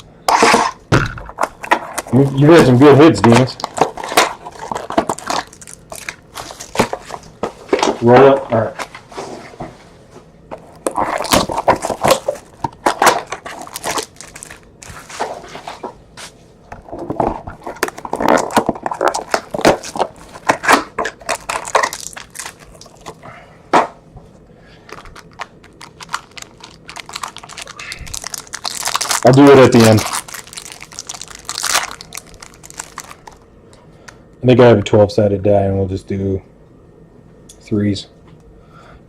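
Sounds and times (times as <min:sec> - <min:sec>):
plastic wrapping crinkling: 0:01.6 - 0:08.0, 0:10.6 - 0:15.8, 0:16.9 - 0:23.2, 0:24.8 - 0:33.5.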